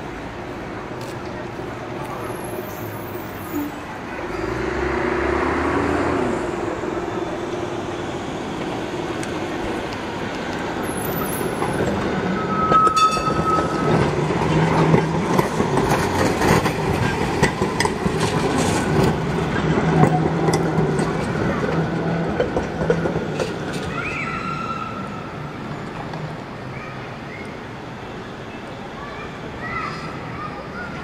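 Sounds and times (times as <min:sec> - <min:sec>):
tram motor hum: 0:00.0 - 0:24.0
wheels clicking over rail joints: 0:08.6 - 0:24.2
wheel squeal: 0:10.8 - 0:14.5.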